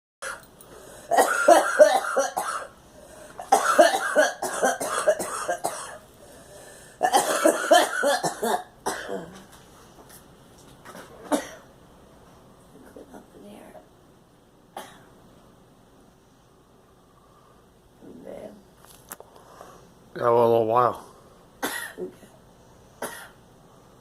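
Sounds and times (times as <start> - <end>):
girl coughing: 1.1 - 2.7, 3.4 - 6.0, 7.0 - 9.4, 10.9 - 11.7, 14.8 - 15.1, 21.6 - 22.2, 23.0 - 23.4.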